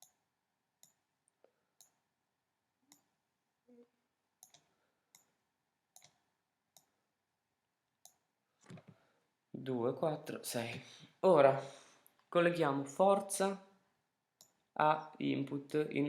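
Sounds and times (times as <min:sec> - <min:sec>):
computer mouse clicks: 0:04.4 - 0:05.3, 0:05.9 - 0:06.2.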